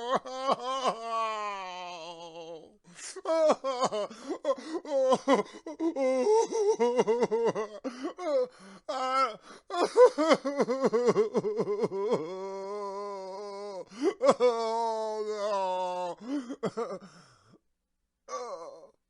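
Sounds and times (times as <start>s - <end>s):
man sobbing: 0.0s - 17.6s, 18.3s - 19.0s
man gasping inhale: 4.1s - 4.8s, 7.8s - 9.7s, 13.9s - 14.2s, 16.2s - 17.6s.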